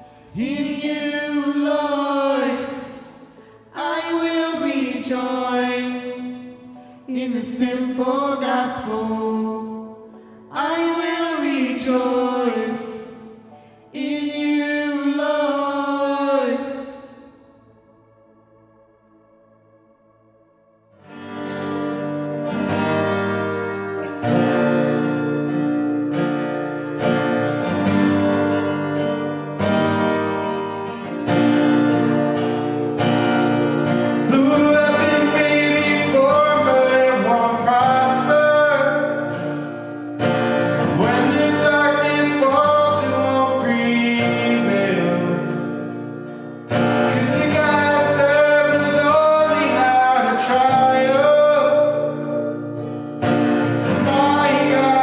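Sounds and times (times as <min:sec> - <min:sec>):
person singing: 0:00.0 - 0:19.4, 0:32.1 - 0:40.0, 0:40.7 - 0:53.0, 0:53.7 - 0:55.0
strummed acoustic guitar: 0:21.0 - 0:55.0.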